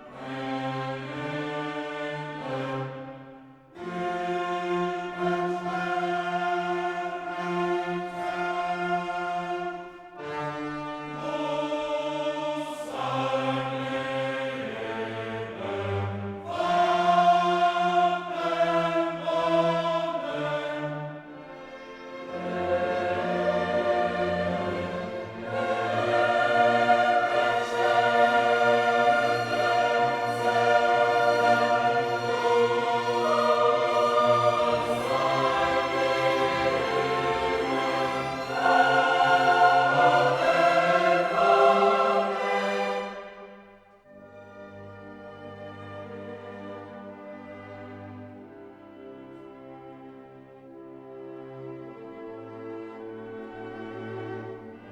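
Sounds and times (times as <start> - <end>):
choir singing held chords: 0.0 - 44.3
orchestra: 0.0 - 54.9.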